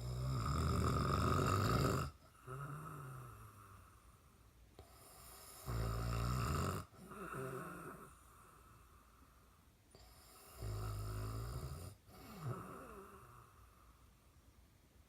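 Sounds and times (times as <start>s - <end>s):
man snoring: 0.0s - 4.0s, 5.0s - 8.8s, 10.2s - 13.6s.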